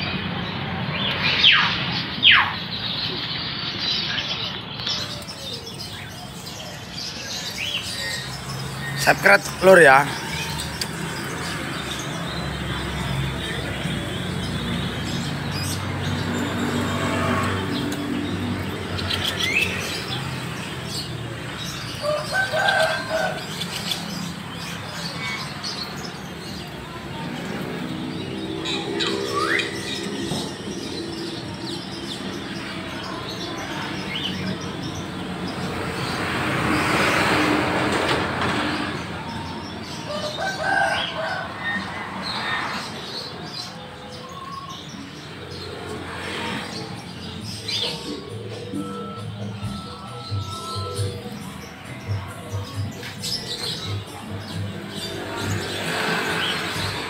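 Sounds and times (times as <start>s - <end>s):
caged birds chirping and whistling: 0.0s - 57.0s.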